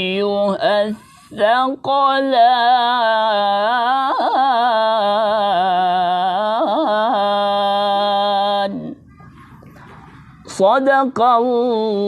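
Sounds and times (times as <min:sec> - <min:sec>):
man chanting melodically: 0:10.5 - 0:12.0.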